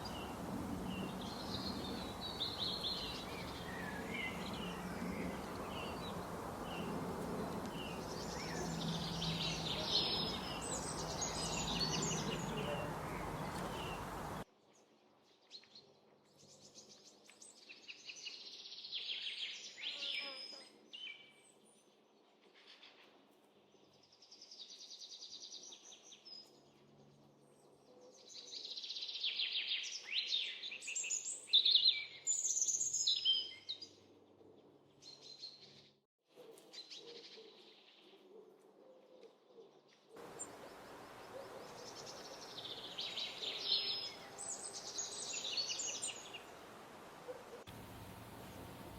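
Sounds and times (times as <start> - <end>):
outdoor ambient hiss: 0.0 - 14.4, 40.2 - 48.9
songbirds chirping: 0.0 - 36.0, 39.7 - 48.9.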